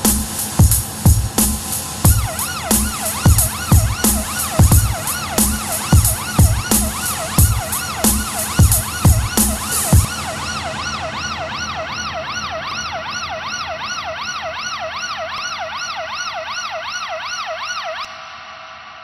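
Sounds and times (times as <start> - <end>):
electronic music: 0.0 - 19.0
drum hit: 0.1 - 10.1
yelp siren: 2.1 - 19.0.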